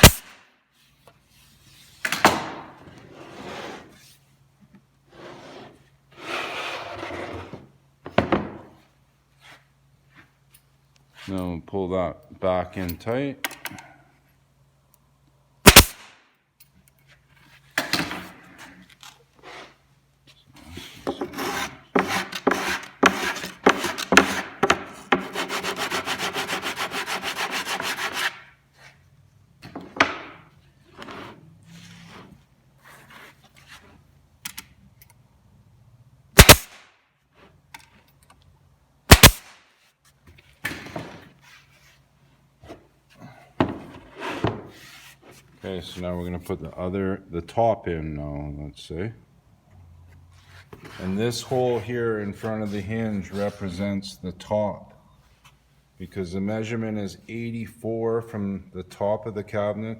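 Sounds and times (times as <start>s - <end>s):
staple gun shots: 0.0s - 0.4s, 15.7s - 16.2s, 36.4s - 36.9s, 39.1s - 39.6s
wooden panels knocked and scraped: 21.0s - 26.1s.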